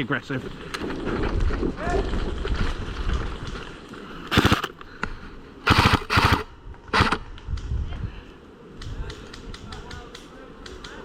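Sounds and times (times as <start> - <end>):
airsoft rifle bursts: 4.2 - 4.8, 5.6 - 7.2.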